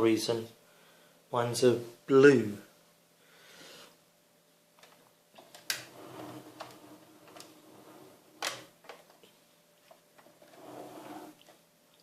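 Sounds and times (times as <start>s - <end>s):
faint rubbing hum: 5.9s - 8.5s, 10.2s - 11.5s.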